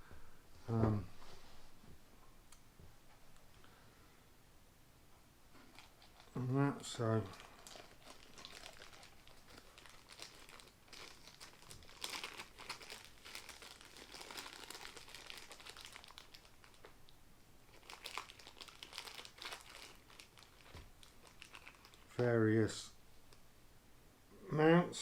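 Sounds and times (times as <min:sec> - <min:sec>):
packaging crinkling and rustling: 0:05.6 - 0:06.4, 0:07.0 - 0:17.0, 0:17.7 - 0:22.1.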